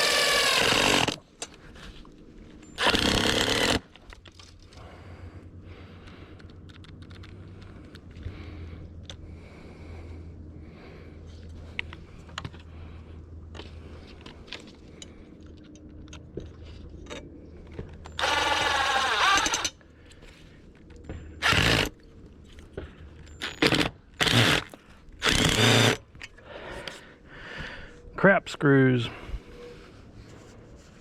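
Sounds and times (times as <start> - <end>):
power drill driving screws: 0.0 - 1.2, 2.8 - 3.8, 18.2 - 19.7, 21.4 - 21.9, 23.4 - 26.0.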